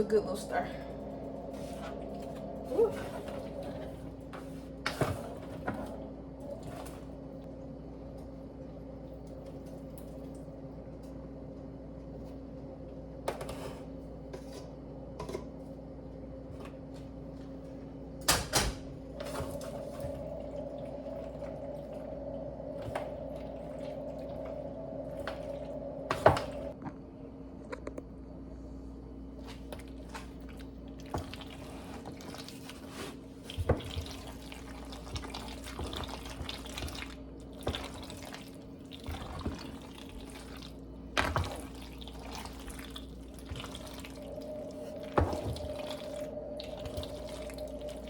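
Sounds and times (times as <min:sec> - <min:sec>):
steady low hum: 0:00.0 - 0:48.0
wet squishing of stirred noodles: 0:29.3 - 0:48.0.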